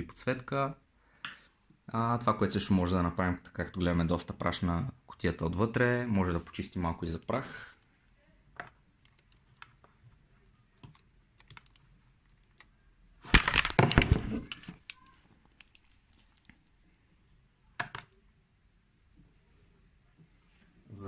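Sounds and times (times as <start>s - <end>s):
computer parts clicking and rattling: 10.8s - 12.7s, 13.3s - 16.2s.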